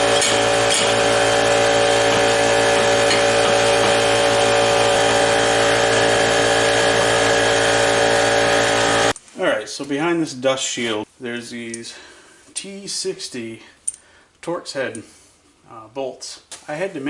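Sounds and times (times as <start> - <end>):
power tool motor whine: 0.0 - 9.2.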